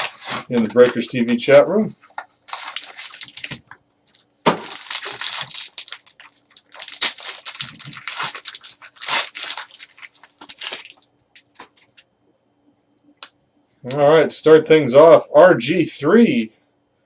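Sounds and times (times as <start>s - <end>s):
wrapper tearing and crinkling: 0.0s - 1.6s, 2.4s - 11.1s.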